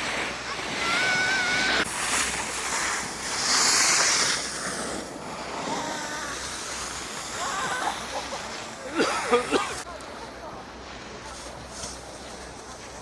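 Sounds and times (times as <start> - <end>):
skis hissing on snow: 0.0 - 9.9
snow scraping: 0.0 - 9.9, 11.2 - 13.0.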